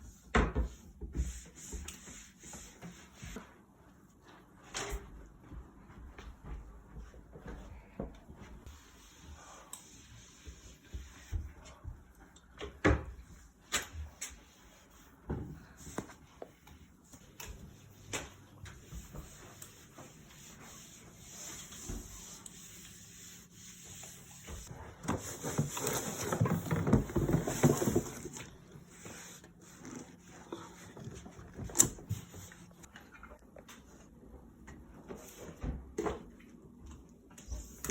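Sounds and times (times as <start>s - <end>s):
rubbing or scrubbing: 14.0s - 31.1s.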